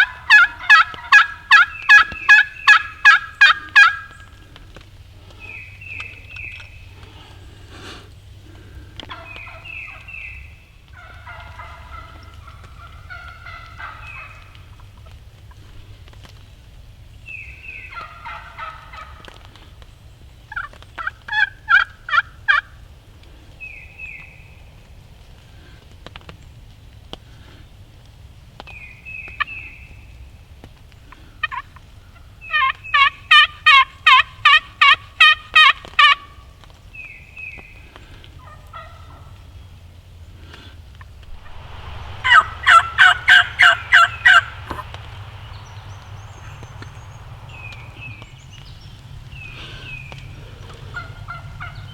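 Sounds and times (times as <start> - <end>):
turkey calling: 0.0 - 4.2, 31.4 - 36.4, 42.2 - 51.9.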